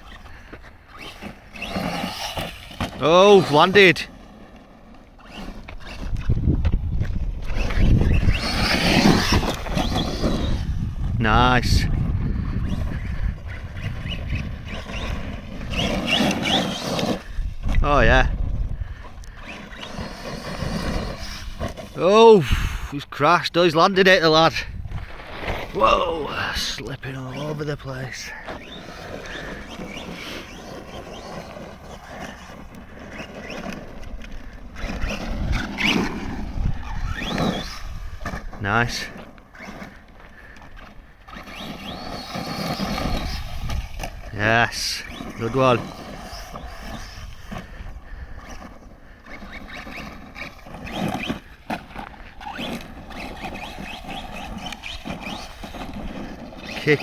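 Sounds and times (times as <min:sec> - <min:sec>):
electric motor whining: 0:00.0 - 0:23.1, 0:24.2 - 0:57.0
tyre and gravel noise: 0:00.0 - 0:57.0.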